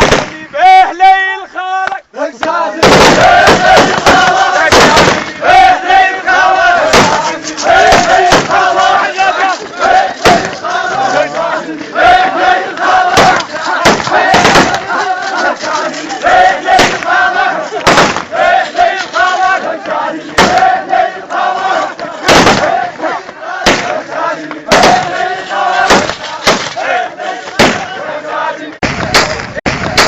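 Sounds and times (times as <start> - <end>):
loud sharp bangs: 0.0 - 0.6, 2.8 - 10.8, 12.8 - 15.7, 16.3 - 19.2, 20.3 - 21.1, 22.2 - 23.0, 23.6 - 28.0, 28.8 - 30.0
crowd of men chanting: 0.3 - 28.8.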